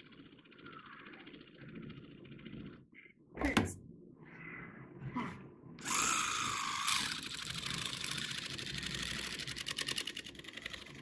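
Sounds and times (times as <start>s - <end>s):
electric carving knife running: 5.8s - 11.0s.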